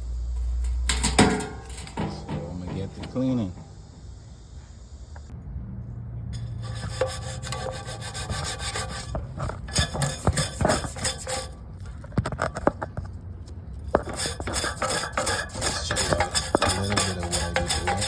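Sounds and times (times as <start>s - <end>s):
brush scrubbing metal fins: 0.9s - 3.8s, 6.4s - 11.6s, 13.9s - 18.0s.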